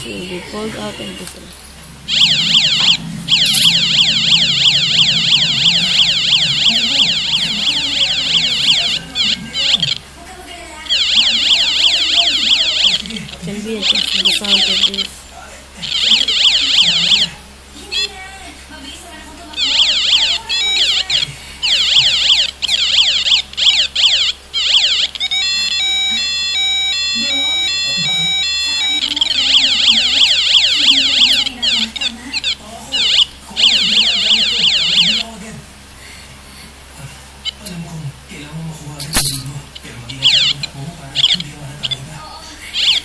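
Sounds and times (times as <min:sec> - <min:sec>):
electronic alarm warbling siren: 0:01.9 - 0:10.1, 0:10.8 - 0:15.2, 0:15.8 - 0:18.1, 0:19.5 - 0:35.4, 0:40.1 - 0:42.0, 0:42.8 - 0:43.0.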